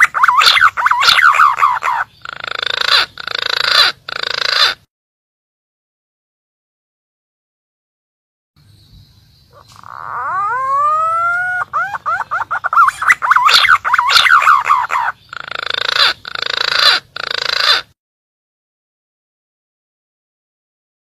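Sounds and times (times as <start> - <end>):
pigeon calling: 0.0 - 4.9, 9.5 - 18.0.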